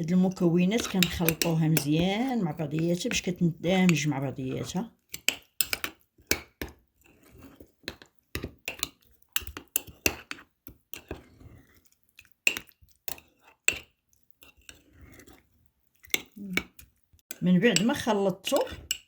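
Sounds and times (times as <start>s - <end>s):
wet stirring: 0.0s - 19.0s
spoon clinking against jar: 0.8s - 2.0s.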